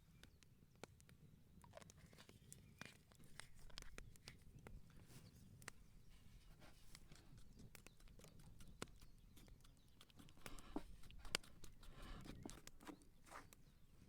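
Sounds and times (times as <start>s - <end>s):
soft rustling: 1.6s - 14.0s
light taps and clicks: 6.7s - 13.7s.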